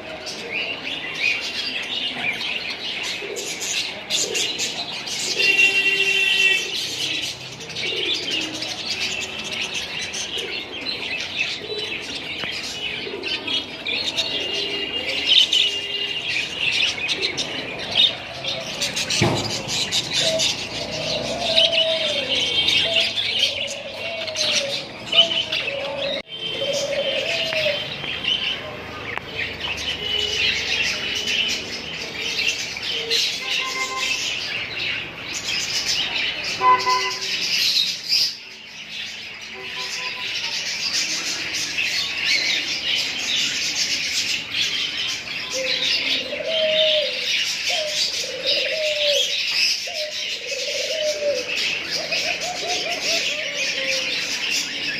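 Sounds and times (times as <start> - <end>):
lovebirds chattering and chirping: 0.0 - 54.9
dove cooing: 1.7 - 27.9, 44.6 - 54.9.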